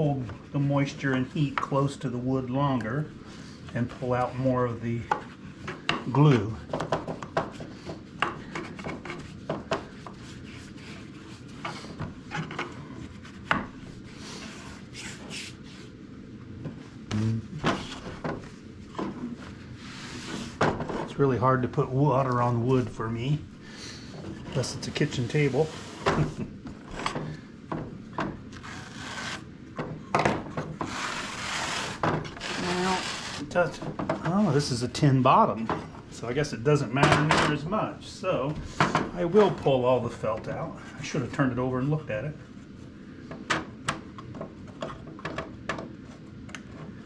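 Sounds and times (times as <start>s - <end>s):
drawer rubbing and scraping: 24.5s - 27.1s.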